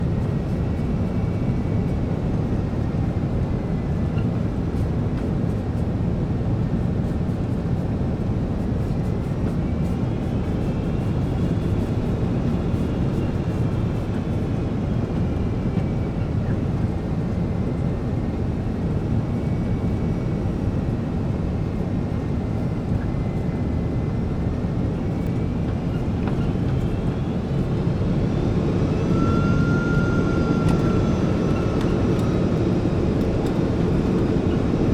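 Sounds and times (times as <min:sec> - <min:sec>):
airliner cabin rumble: 0:00.0 - 0:34.9
high engine whine: 0:10.0 - 0:34.9.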